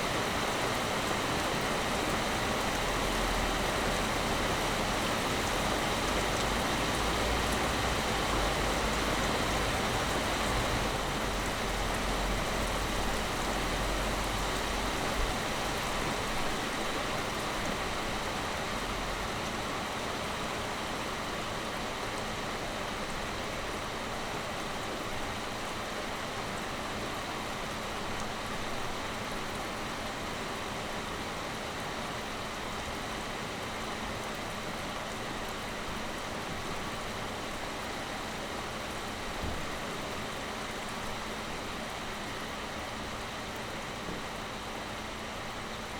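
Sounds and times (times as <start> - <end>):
heavy rain pouring: 0.0 - 21.4.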